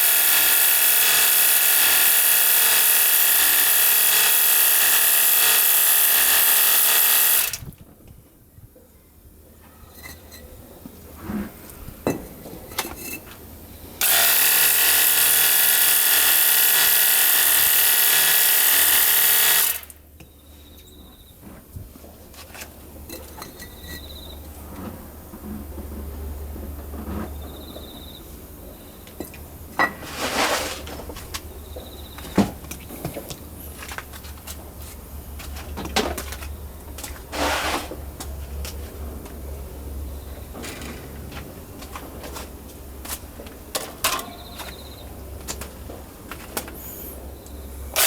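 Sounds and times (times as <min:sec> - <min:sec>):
pressure washer motor whine: 0:00.0 - 0:07.7, 0:14.0 - 0:20.0.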